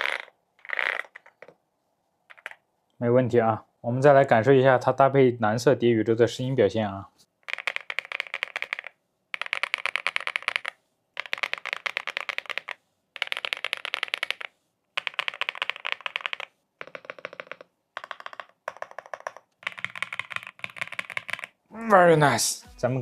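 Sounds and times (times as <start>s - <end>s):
mechanical keyboard typing: 7.4s - 21.6s.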